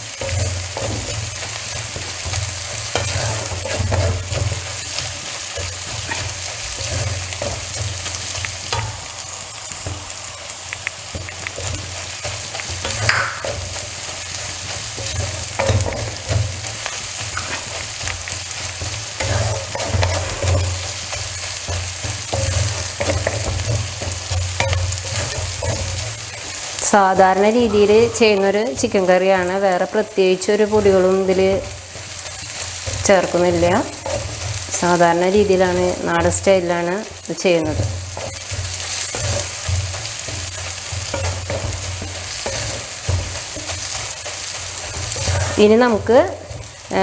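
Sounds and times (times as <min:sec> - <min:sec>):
onions sizzling in hot oil: 0:00.0 - 0:47.0
spatula stirring and scraping: 0:00.0 - 0:47.0
low hum: 0:08.4 - 0:13.6.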